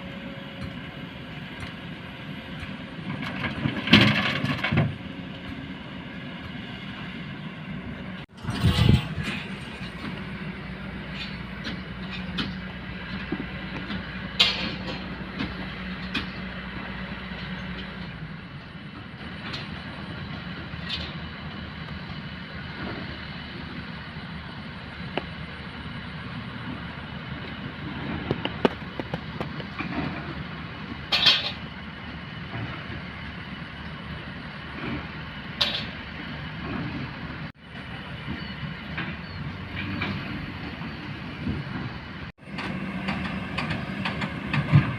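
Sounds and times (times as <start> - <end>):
excavator diesel engine running: 0.0 - 44.9
metallic clanks and scrapes: 2.6 - 5.6, 8.3 - 10.3, 11.0 - 16.4, 28.0 - 30.4, 31.1 - 31.7, 35.6 - 37.2.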